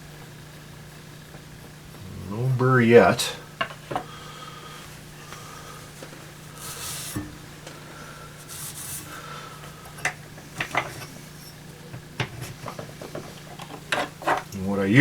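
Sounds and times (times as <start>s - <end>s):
steady low hum: 0.0s - 15.0s
hone scraping on blade edge: 5.2s - 14.5s.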